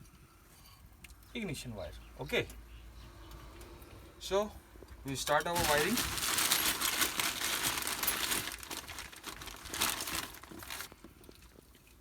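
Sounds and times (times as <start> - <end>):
wiring crinkling and rustling: 5.1 - 12.0.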